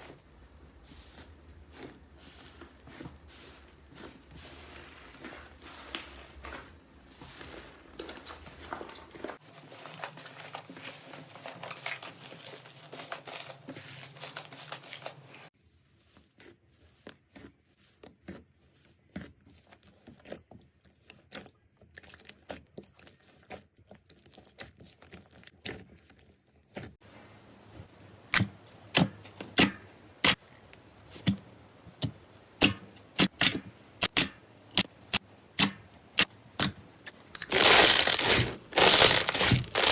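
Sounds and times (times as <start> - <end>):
slime crackling and popping: 32.6 - 39.9.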